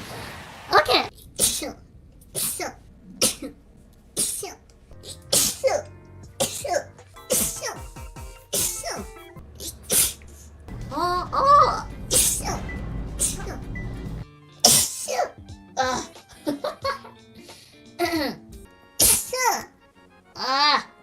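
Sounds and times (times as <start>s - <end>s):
woman sneezing: 4.2s - 5.8s, 6.4s - 7.8s, 8.5s - 9.0s, 9.6s - 10.3s, 12.1s - 12.5s, 14.6s - 16.2s, 19.0s - 19.7s.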